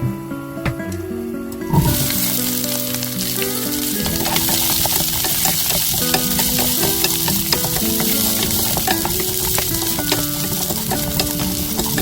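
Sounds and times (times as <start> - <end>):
garlic sizzling in oil: 1.7 - 12.0
utensil clicking against pan: 3.2 - 12.0.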